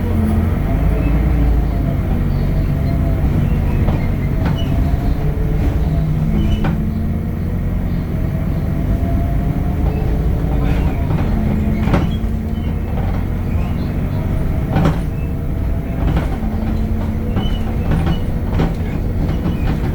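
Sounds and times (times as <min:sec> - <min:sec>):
bus diesel engine drone: 0:00.0 - 0:19.9
sharp knocks or rattles: 0:03.0 - 0:07.8, 0:09.7 - 0:19.9.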